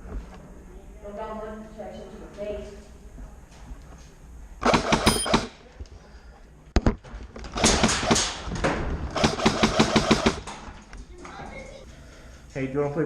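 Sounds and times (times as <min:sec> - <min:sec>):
airsoft guns firing: 0:04.6 - 0:05.6, 0:06.8 - 0:10.8.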